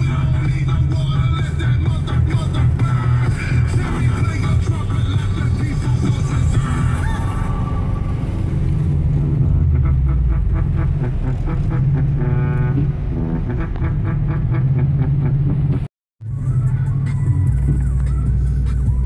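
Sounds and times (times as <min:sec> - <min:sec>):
background music: 0:00.0 - 0:19.0
car engine running: 0:00.0 - 0:19.0.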